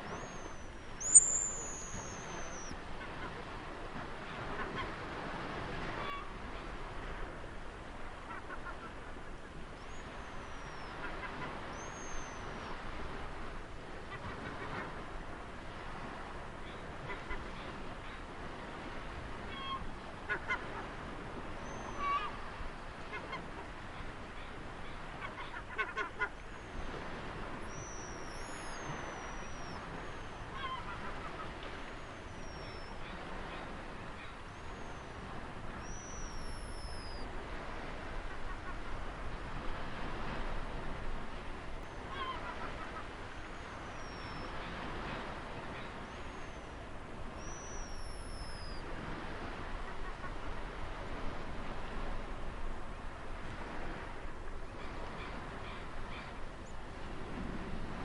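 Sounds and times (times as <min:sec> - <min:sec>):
ocean surf: 0:00.0 - 0:58.0
harsh low bird calls: 0:00.2 - 0:02.7
high chirping bird calls: 0:00.2 - 0:02.7.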